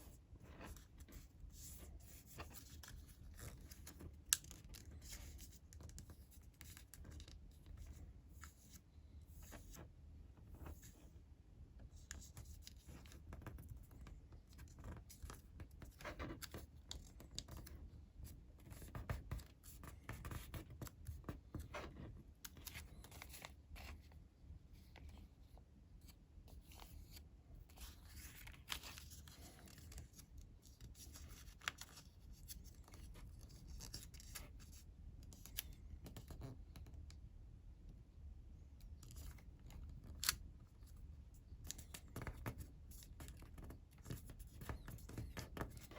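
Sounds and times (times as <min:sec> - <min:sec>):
paper rustling and crinkling: 0:26.0 - 0:34.5.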